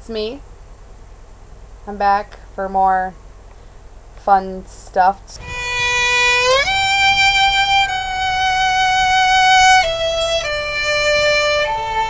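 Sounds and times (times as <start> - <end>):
solo violin slow notes: 5.4 - 12.0.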